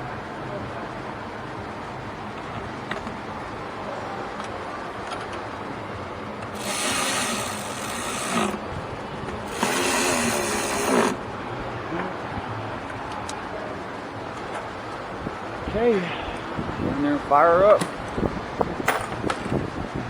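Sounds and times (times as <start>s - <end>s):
rasping rubbing noises: 6.5s - 8.6s, 9.4s - 11.2s.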